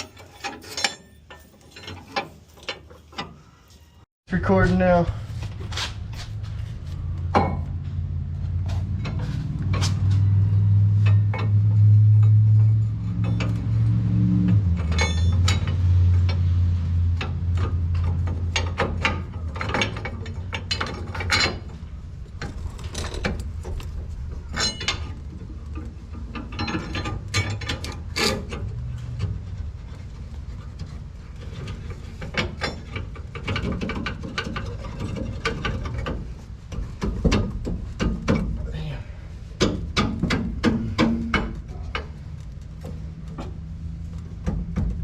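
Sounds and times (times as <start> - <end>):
low hum: 4.5 - 30.0.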